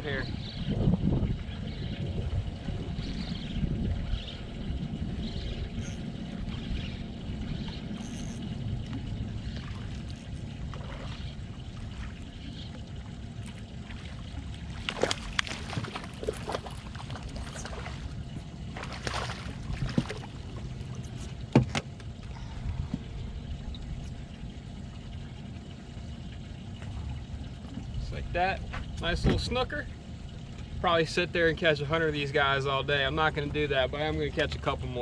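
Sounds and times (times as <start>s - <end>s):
water lapping against boat hull: 0.0s - 35.0s
splashing and knocking: 13.9s - 18.1s, 18.7s - 20.8s.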